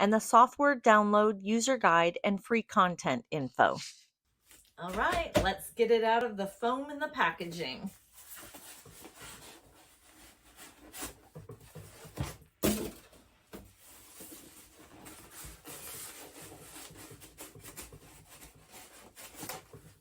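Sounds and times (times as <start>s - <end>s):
foam rubbing and packaging rustle: 7.2s - 12.4s, 13.1s - 20.0s.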